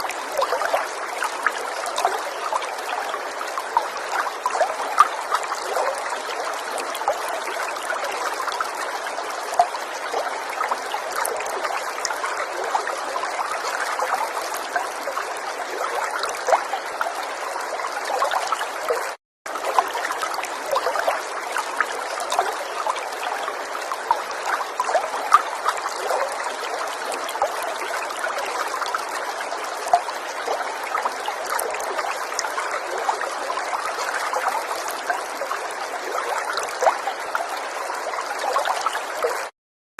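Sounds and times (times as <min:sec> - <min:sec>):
river water rushing and trickling: 0:00.0 - 0:39.5.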